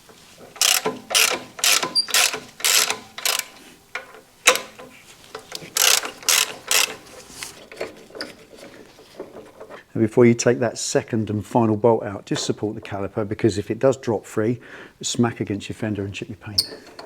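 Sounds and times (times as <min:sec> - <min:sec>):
socket ratchet clicking: 0:00.6 - 0:03.6, 0:04.5 - 0:04.8, 0:05.5 - 0:07.0.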